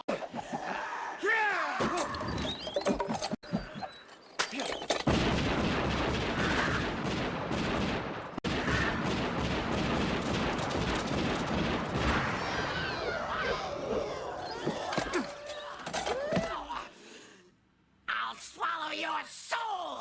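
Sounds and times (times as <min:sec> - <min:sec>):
repeated gunfire: 0:05.1 - 0:12.5.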